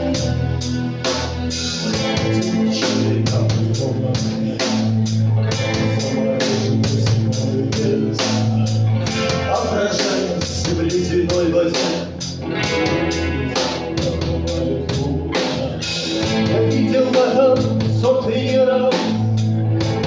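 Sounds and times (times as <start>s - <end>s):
bass guitar: 0.0s - 20.0s
drum kit steady beat: 0.0s - 20.0s
electric guitar: 0.0s - 20.0s.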